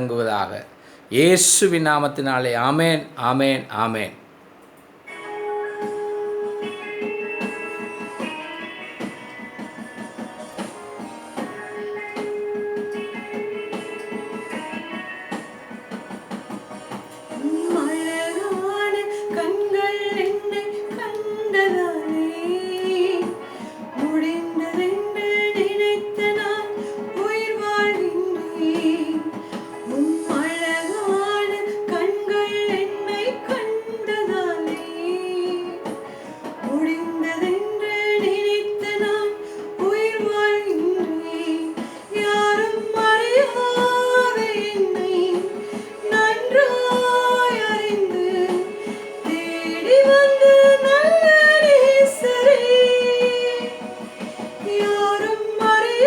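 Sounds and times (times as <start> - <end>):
backing music: 1.1 - 56.0
woman singing: 11.4 - 15.5, 17.3 - 56.0.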